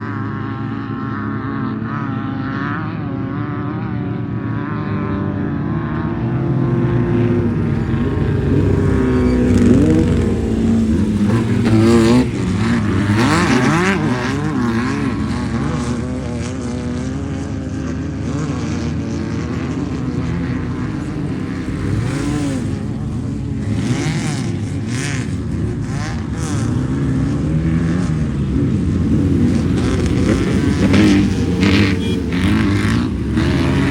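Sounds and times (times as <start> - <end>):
off-road vehicle engines revving: 0.0 - 33.9.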